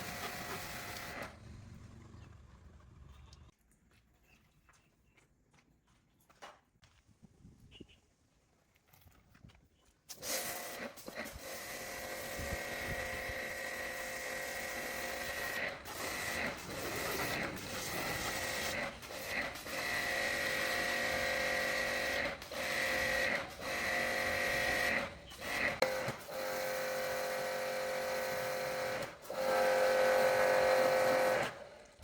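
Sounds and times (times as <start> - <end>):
electric power tool whining: 0.0 - 1.5, 10.3 - 32.0.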